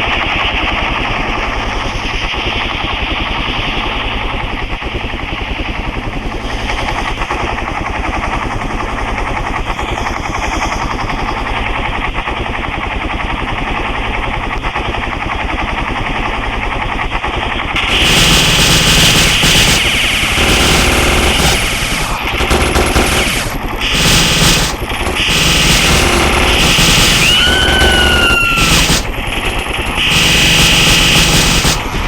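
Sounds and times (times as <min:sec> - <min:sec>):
helicopter rotor chop: 0:00.0 - 0:32.0
loud harsh sound: 0:17.8 - 0:32.0.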